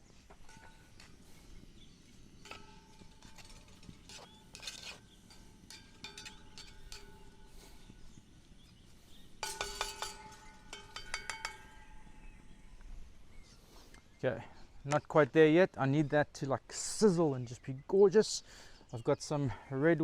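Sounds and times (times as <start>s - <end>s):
metal utensil clinking against pot: 0.4s - 1.2s, 2.4s - 8.0s, 9.4s - 12.2s.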